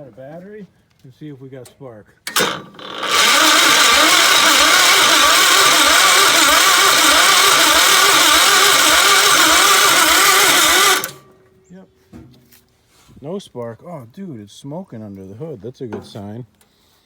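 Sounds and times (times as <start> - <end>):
starter click: 2.3 - 11.3
starter motor cranking engine: 2.3 - 11.3.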